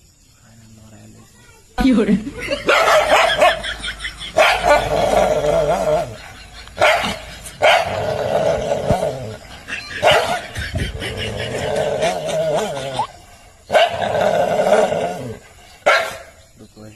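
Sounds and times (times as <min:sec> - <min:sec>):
dog barking: 0:02.6 - 0:03.7, 0:04.3 - 0:04.9, 0:06.8 - 0:08.0, 0:10.0 - 0:10.4, 0:13.7 - 0:14.1, 0:15.8 - 0:16.4
dog growling: 0:04.4 - 0:15.8.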